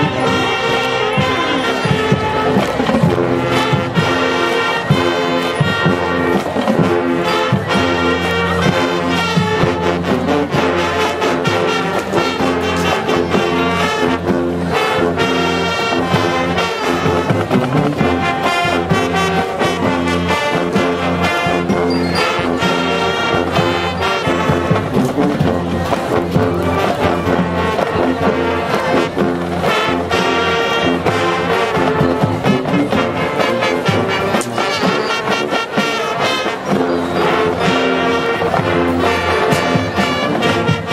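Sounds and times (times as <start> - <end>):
marching band brass: 0.0 - 40.9
steady drum beat: 0.0 - 40.9.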